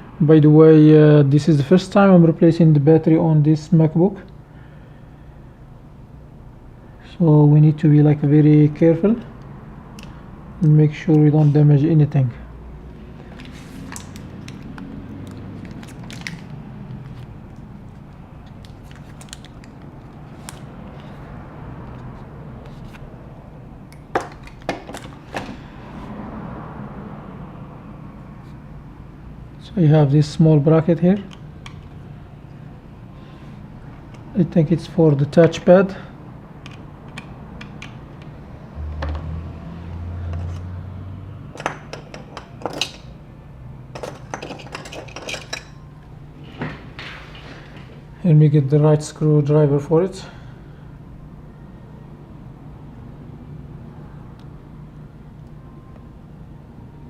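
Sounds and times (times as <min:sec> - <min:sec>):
metal tools clinking: 0:44.0 - 0:45.9.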